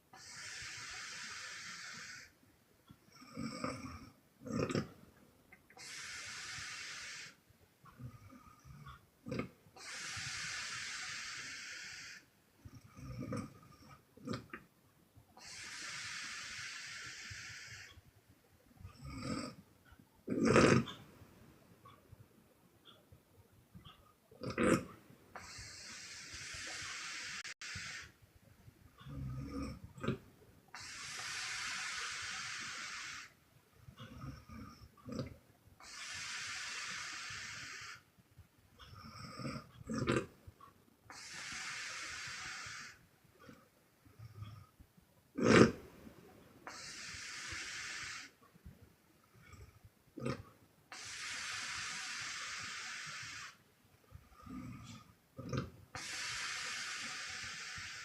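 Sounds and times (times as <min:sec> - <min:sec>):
low rattling snore: 0:00.1 - 0:02.4, 0:03.0 - 0:05.0, 0:05.8 - 0:14.6, 0:18.8 - 0:21.1, 0:23.9 - 0:28.2, 0:29.0 - 0:38.1, 0:38.8 - 0:40.4, 0:41.1 - 0:44.8, 0:45.4 - 0:48.5, 0:49.3 - 0:53.6, 0:54.2 - 0:58.0
woman snoring: 0:03.1 - 0:04.9, 0:46.7 - 0:48.4, 0:54.3 - 0:58.0.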